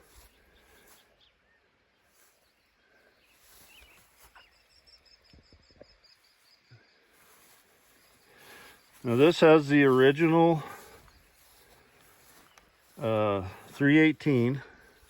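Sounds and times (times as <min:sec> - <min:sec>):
faint bird chirps: 0:00.0 - 0:09.2, 0:10.6 - 0:13.1.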